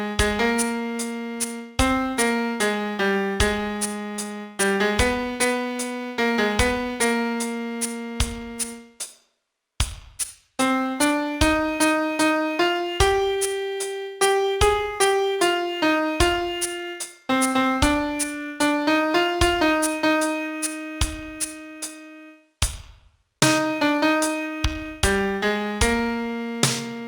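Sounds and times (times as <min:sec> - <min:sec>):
slow solo piano melody: 0:10.6 - 0:22.2.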